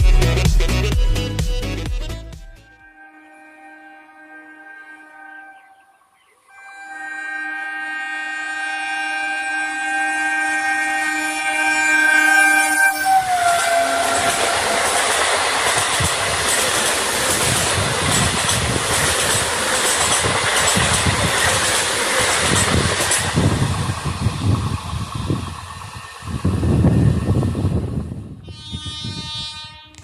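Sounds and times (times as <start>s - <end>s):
train horn: 2.6s - 16.1s, 28.4s - 30.0s
train wheels rushing on rails: 9.9s - 28.4s.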